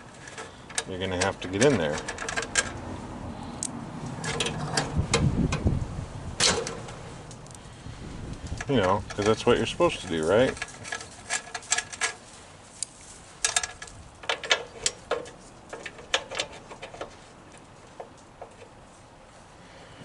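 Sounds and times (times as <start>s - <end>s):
metal tools clinking on engine: 0.1s - 2.8s, 4.2s - 5.0s, 8.6s - 12.2s, 13.4s - 18.8s.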